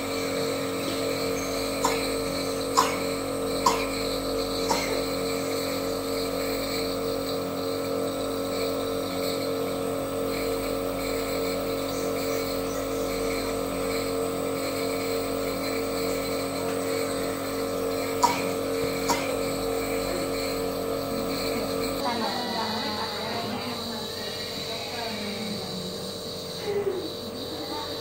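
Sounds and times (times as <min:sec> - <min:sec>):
nebulizer motor hum: 0:00.0 - 0:28.0.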